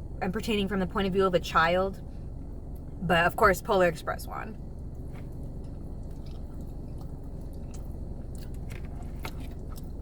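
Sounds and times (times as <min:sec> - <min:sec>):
steady low hum: 0:00.0 - 0:10.0
person chewing food: 0:04.9 - 0:10.0.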